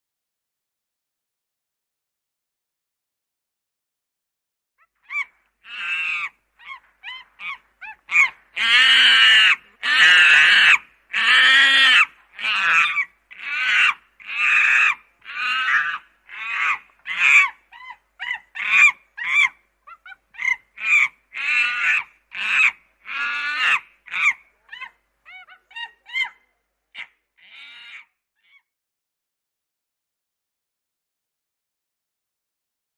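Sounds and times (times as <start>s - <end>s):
chimpanzee screaming and calling: 5.0s - 28.7s.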